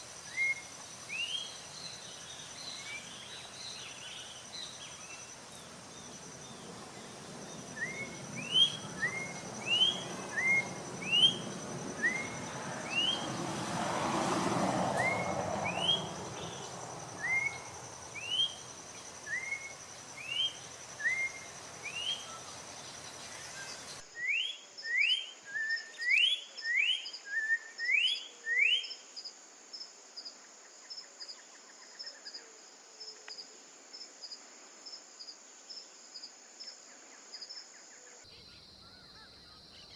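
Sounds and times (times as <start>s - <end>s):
insects trilling: 0.0s - 25.2s, 38.3s - 39.9s
bird whistling song: 7.7s - 13.4s, 15.0s - 16.6s, 17.2s - 28.9s.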